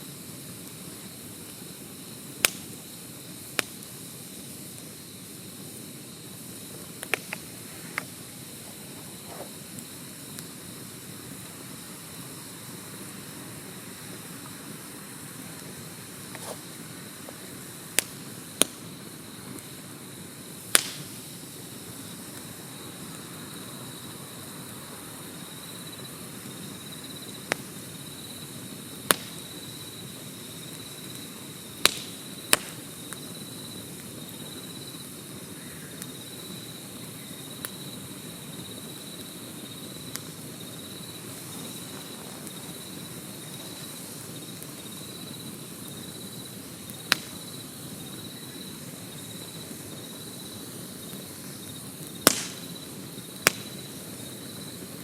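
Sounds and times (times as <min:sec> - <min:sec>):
fire popping and cracking: 0:00.0 - 0:23.3, 0:26.1 - 0:55.0
campfire hissing: 0:00.0 - 0:55.0
high insect trill: 0:00.0 - 0:55.0.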